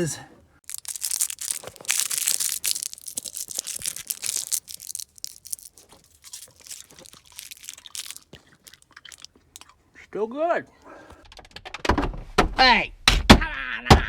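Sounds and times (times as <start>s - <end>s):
crackling and tearing of car trim: 0.6s - 9.6s
rustles and clicks: 0.7s - 9.6s.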